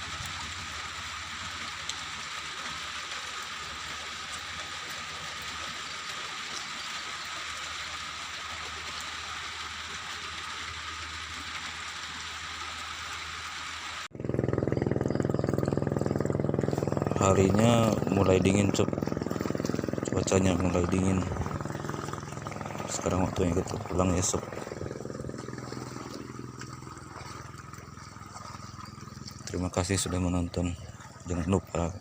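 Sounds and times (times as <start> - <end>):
steady rain hiss: 0.0 - 14.1
low droning sound: 14.1 - 31.7.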